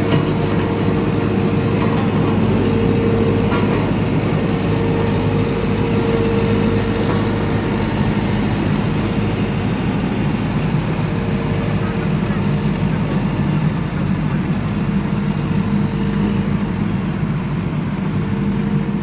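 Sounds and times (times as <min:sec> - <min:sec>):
road roller engine running: 0:00.0 - 0:19.0.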